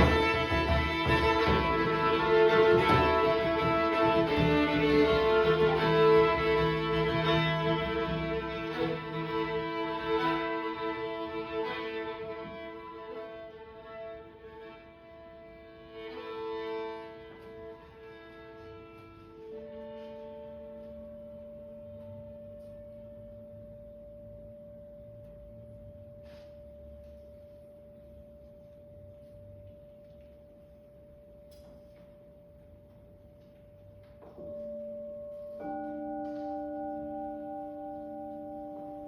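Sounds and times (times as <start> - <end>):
singing bowl ringing: 34.0 - 39.0
second singing bowl higher pitch: 34.2 - 39.0.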